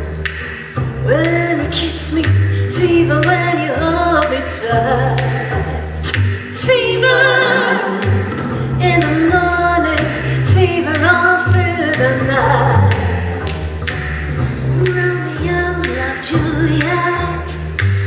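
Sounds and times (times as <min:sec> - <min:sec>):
bass line: 0:00.0 - 0:18.0
several voices singing: 0:01.2 - 0:13.6
drum hits: 0:07.2 - 0:11.1.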